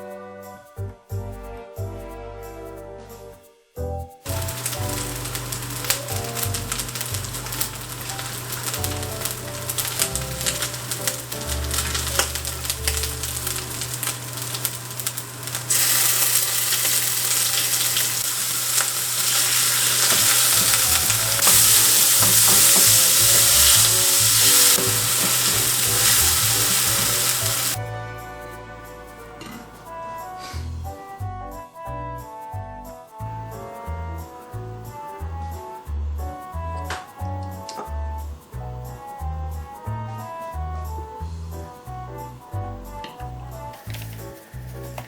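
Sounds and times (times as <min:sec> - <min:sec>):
food sizzling in a pan: 0:04.3 - 0:27.8.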